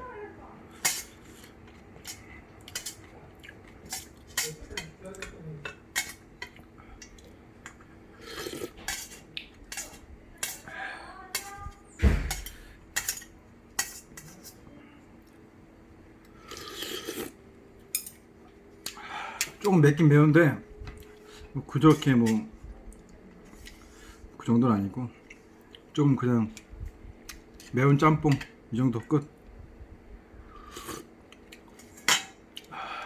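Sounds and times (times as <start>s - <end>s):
utensils clinking against bowl: 0.8s - 6.6s, 8.4s - 10.7s, 12.2s - 14.6s, 17.9s - 18.2s.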